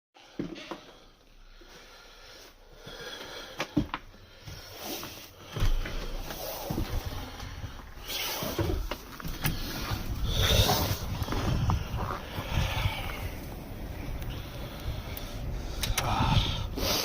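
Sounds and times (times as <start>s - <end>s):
wind gusting against microphone: 6.6s - 17.0s.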